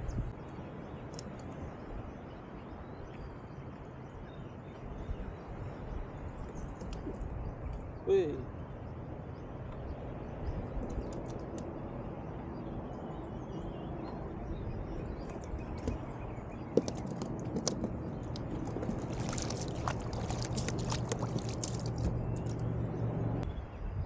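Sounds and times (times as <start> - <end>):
small clicks and splashes: 1.0 - 1.6, 6.5 - 7.2, 10.8 - 11.7, 15.2 - 22.8
water sloshing around kayak: 15.1 - 22.8.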